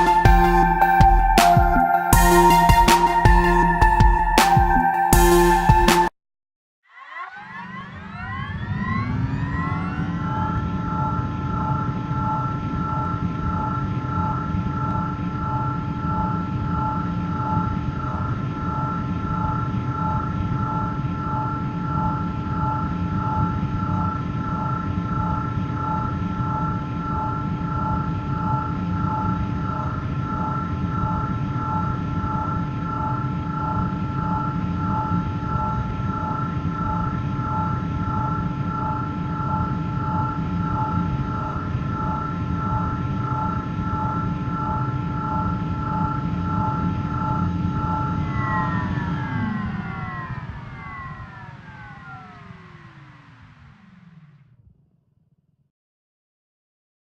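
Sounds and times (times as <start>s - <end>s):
sci-fi hover engine hum: 7.6s - 54.5s.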